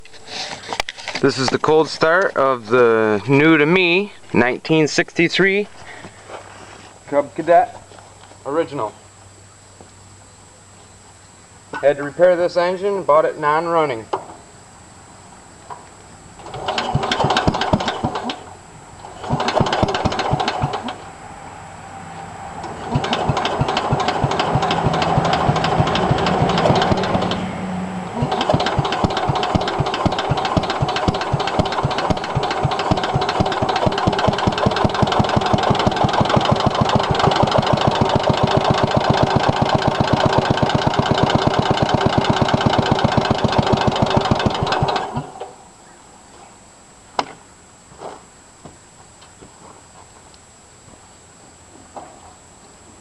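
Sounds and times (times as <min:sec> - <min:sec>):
engine cranking: 0:16.4 - 0:18.4, 0:19.0 - 0:21.0, 0:22.6 - 0:27.4, 0:28.2 - 0:45.5
engine running with hard knock: 0:16.4 - 0:18.4, 0:19.2 - 0:21.0, 0:22.6 - 0:45.4.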